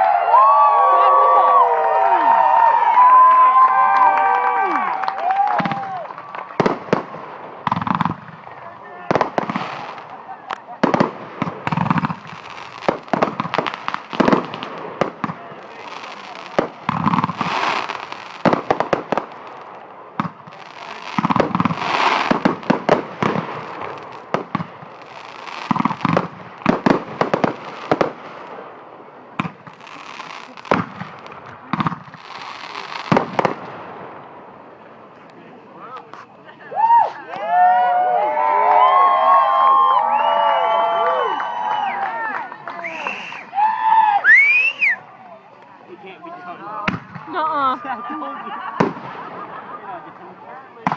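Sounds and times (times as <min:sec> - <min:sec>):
fireworks bangs and crackles: 0:02.3 - 0:36.9, 0:45.6 - 0:50.9.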